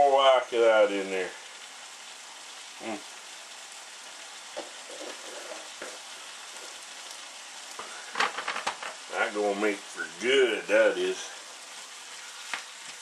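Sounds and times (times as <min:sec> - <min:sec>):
meat sizzling in a frying pan: 0:00.0 - 0:13.0
faint stirring knocks: 0:04.5 - 0:06.8, 0:07.8 - 0:09.0.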